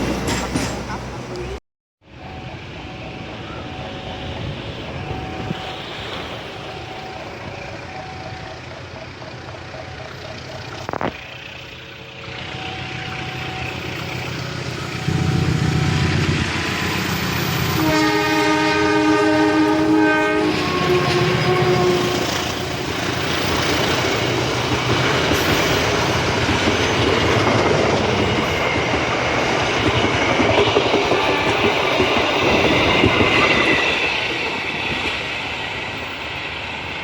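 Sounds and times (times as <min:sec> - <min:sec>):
diesel locomotive engine rumble: 0:00.0 - 0:37.0
locomotive air horn chord: 0:15.0 - 0:22.7.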